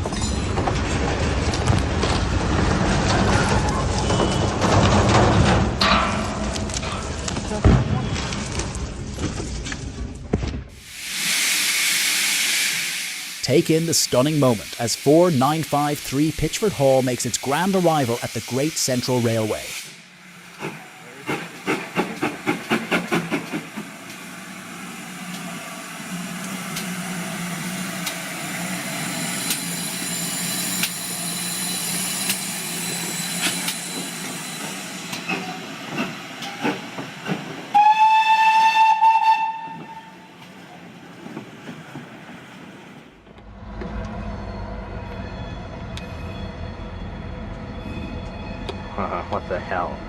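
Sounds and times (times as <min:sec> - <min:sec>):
low train rumble: 0:00.0 - 0:50.0
metal clanks: 0:04.6 - 0:07.2
steam hissing: 0:10.8 - 0:36.8
steam locomotive exhaust chuffs: 0:10.8 - 0:40.2
steam whistle blast: 0:37.7 - 0:40.3.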